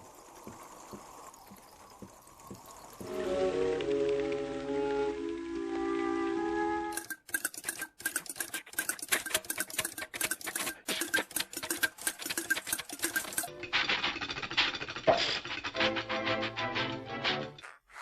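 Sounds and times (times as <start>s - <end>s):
rapid clatter of small clicks: 6.9s - 15.8s.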